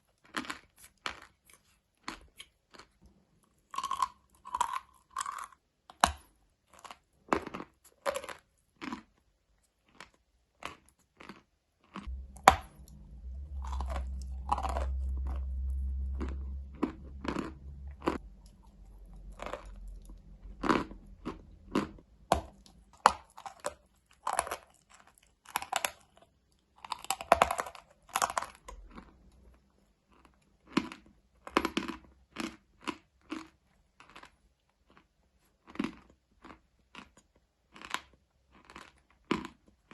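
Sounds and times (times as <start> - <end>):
person chewing something crunchy: 0.0 - 39.9
low rumble: 12.1 - 23.1.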